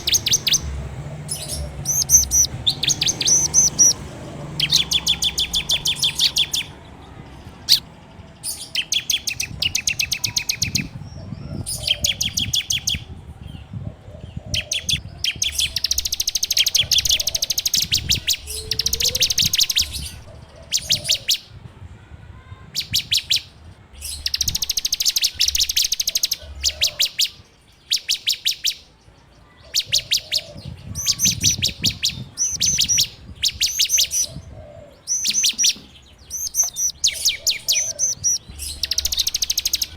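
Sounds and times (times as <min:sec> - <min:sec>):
bird singing rapid high notes: 0:00.0 - 0:06.8, 0:07.6 - 0:11.0, 0:14.8 - 0:20.2, 0:24.0 - 0:26.4, 0:30.9 - 0:34.3, 0:35.1 - 0:39.9.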